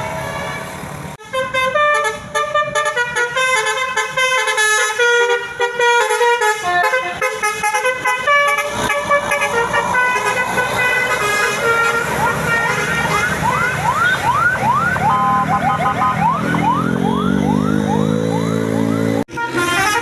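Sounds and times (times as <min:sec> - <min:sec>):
multi-tone air horn melody: 0:00.0 - 0:13.9, 0:19.3 - 0:20.0.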